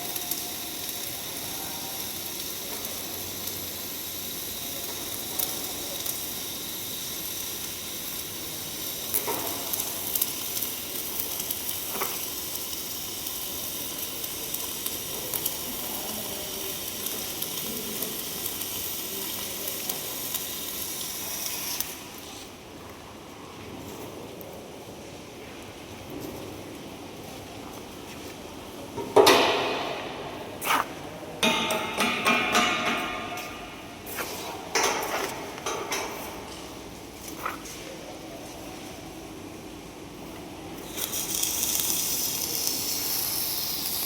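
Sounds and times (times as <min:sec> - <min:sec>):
welding arc crackling: 0:00.0 - 0:22.6, 0:29.0 - 0:37.7, 0:40.8 - 0:44.0.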